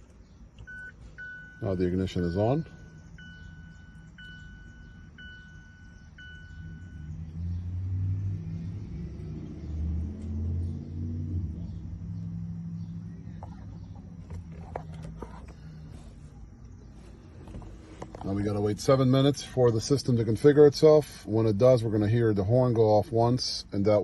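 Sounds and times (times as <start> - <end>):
electronic beeps: 0.6 - 7.2.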